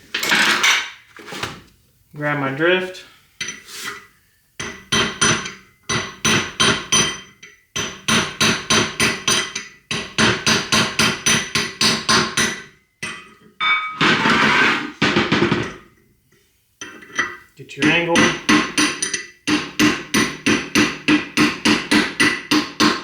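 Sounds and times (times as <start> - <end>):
hammer striking metal: 4.6 - 15.9, 17.8 - 23.0.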